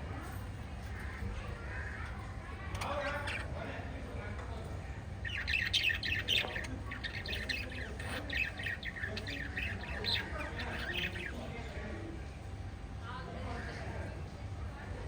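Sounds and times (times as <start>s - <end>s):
steady low hum: 0.0s - 15.0s
budgerigars chirping and squawking: 2.8s - 3.7s, 5.2s - 11.6s.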